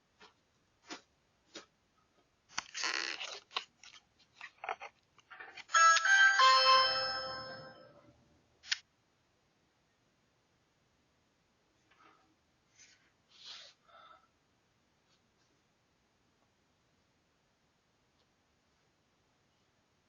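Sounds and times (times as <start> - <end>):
electronic doorbell chime: 5.7 - 8.0.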